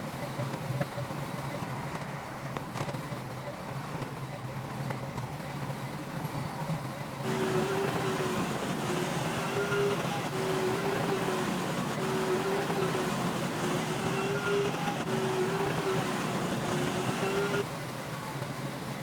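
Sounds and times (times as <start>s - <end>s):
diesel engine droning: 7.2s - 17.6s
wavering whine: 7.2s - 17.6s.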